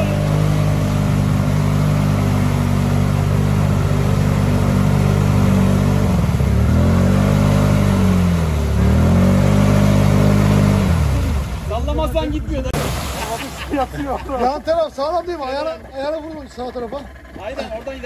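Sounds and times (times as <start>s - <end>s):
atv engine revving: 0.0s - 18.0s.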